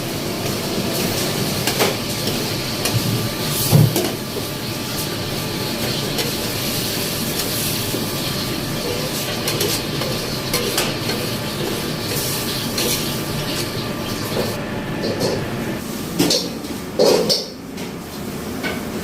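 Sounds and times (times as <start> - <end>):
food sizzling in a pan: 0.9 - 14.6.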